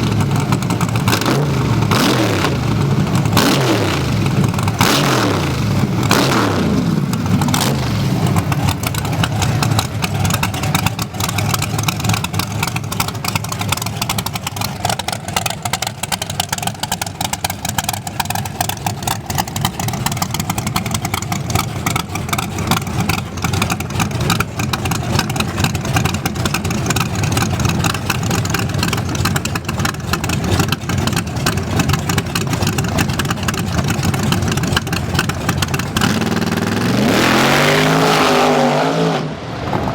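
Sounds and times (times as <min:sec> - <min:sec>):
racing car engines revving: 0:00.0 - 0:39.9.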